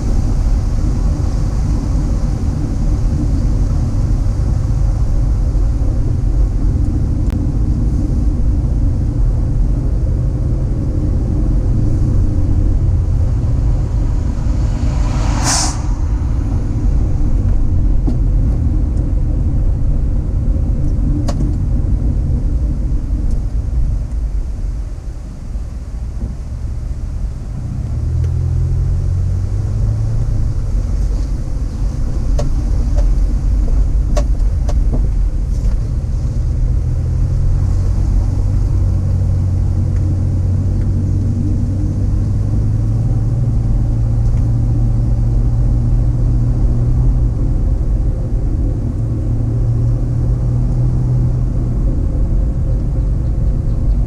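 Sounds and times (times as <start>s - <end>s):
car engine and tyres rumbling: 0.0s - 54.0s
falling swish: 13.9s - 17.8s.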